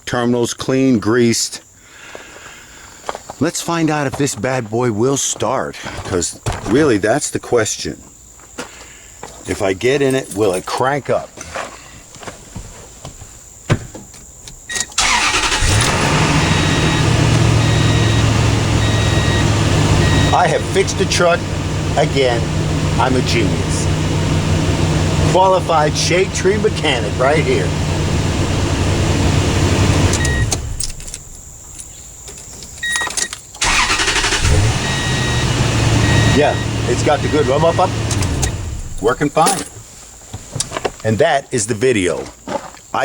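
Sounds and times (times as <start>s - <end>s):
ignition click: 14.5s - 21.4s, 29.4s - 32.0s, 32.8s - 39.1s
car engine starting and idling: 14.6s - 39.7s
short warning beep: 16.3s - 21.2s, 30.1s - 30.6s, 34.1s - 38.0s
clicks: 37.3s - 38.7s.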